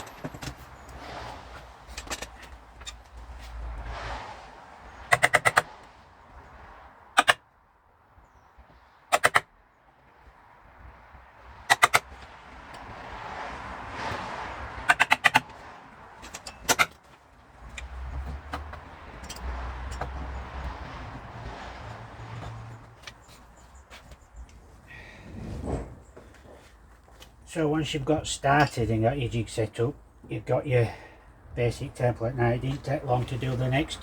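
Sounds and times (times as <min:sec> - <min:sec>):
hammer striking chisel: 0:05.1 - 0:05.7.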